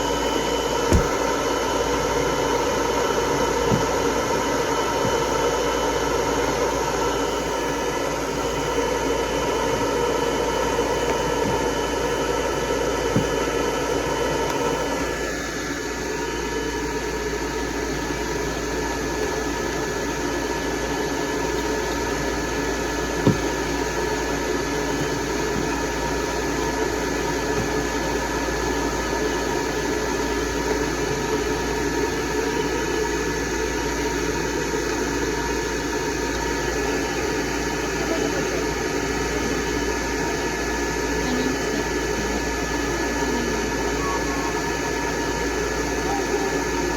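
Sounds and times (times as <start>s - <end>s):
hair dryer blowing: 0.0s - 46.9s
small knock: 0.9s - 1.2s.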